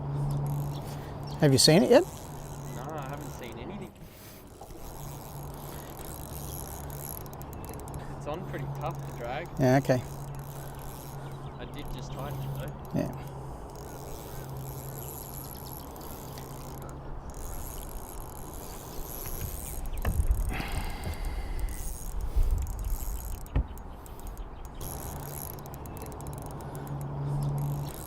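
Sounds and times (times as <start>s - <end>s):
fishing reel clicking and rasping: 0.1s - 28.0s
sharp knocks: 23.5s - 23.8s.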